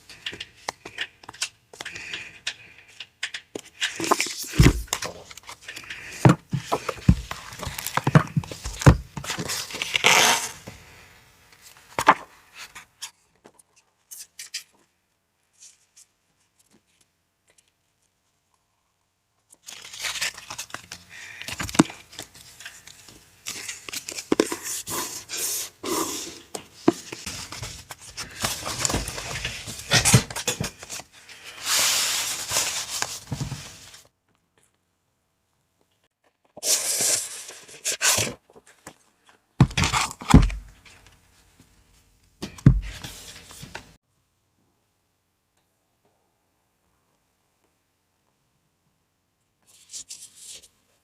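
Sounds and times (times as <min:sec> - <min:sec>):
paper crinkling and tearing: 0:03.8 - 0:10.6, 0:19.5 - 0:26.3, 0:27.2 - 0:34.1, 0:36.6 - 0:39.0.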